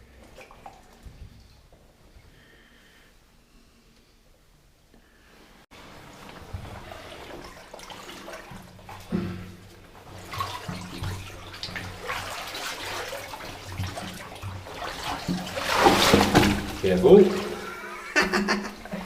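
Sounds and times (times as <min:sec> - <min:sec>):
wading through water splashing: 0:05.8 - 0:19.0.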